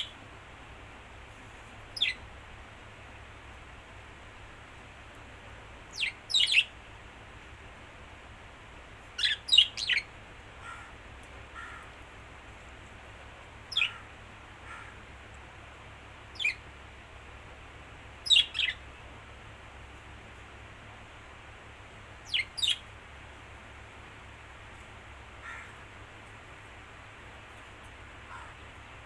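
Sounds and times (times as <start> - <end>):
birds chirping: 1.8 - 2.3, 5.9 - 6.8, 9.1 - 12.0, 13.6 - 14.1, 16.3 - 16.7, 18.2 - 18.9, 22.2 - 22.9.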